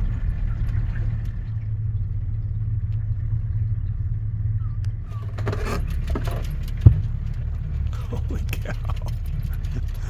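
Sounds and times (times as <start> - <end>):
boat engine humming: 0.0 - 10.0
clicks and rattles: 5.1 - 10.0.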